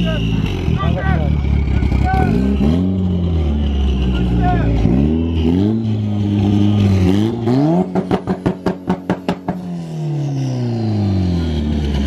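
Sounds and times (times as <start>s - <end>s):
car engine revving: 0.0s - 12.0s
rapid exhaust pops: 7.8s - 9.6s.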